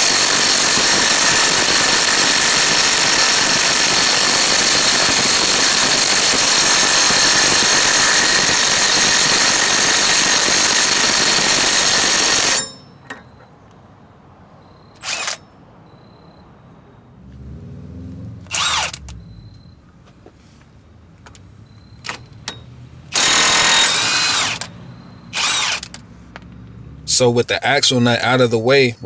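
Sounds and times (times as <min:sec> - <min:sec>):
impact wrench running: 0:00.0 - 0:13.4, 0:15.0 - 0:15.4, 0:18.4 - 0:19.3, 0:22.0 - 0:26.0.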